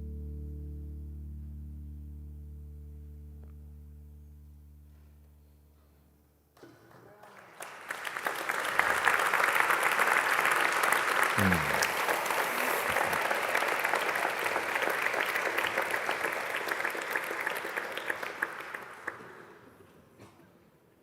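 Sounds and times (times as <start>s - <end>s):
audience applauding: 7.1s - 19.6s.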